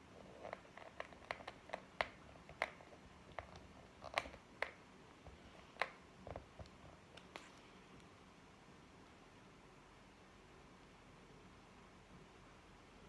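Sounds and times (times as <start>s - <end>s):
small clicks and taps: 0.4s - 8.1s.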